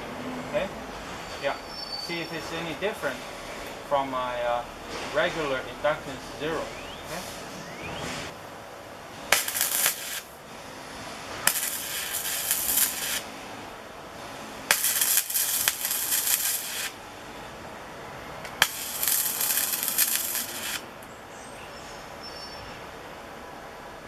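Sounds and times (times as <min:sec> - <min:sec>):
welding arc crackling: 0:09.0 - 0:21.1.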